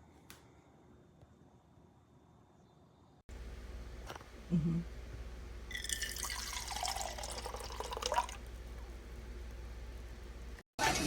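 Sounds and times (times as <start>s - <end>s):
steady low hum: 0.0s - 10.6s
water pouring from spigot: 5.8s - 8.4s.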